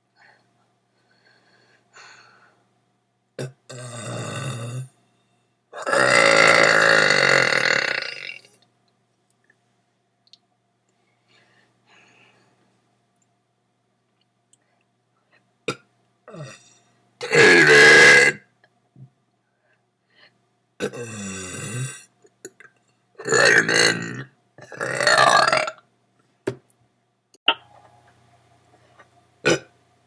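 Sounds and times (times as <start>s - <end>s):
person burping: 3.4s - 4.9s, 5.8s - 8.5s, 15.7s - 18.4s, 20.8s - 22.6s, 23.2s - 25.8s, 29.4s - 29.7s.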